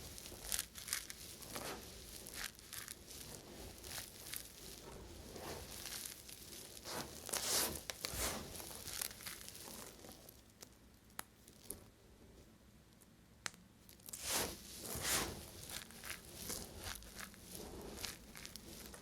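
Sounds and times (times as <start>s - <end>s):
knife scraping bar soap: 14.0s - 19.0s.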